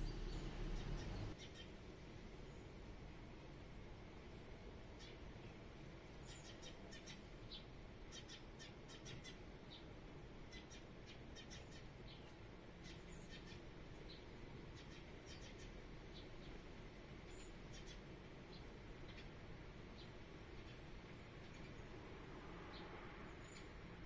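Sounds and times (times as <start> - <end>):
low background rumble: 0.0 - 1.4
songbirds chirping: 0.0 - 24.0.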